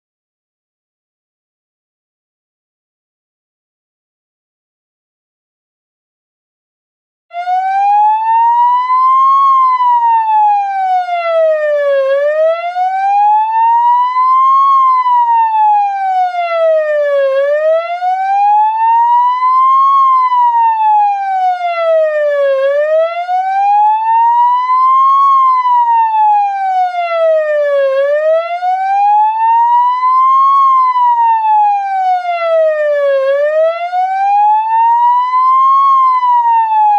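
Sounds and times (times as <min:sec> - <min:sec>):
ambulance siren wailing: 0:07.3 - 0:36.9.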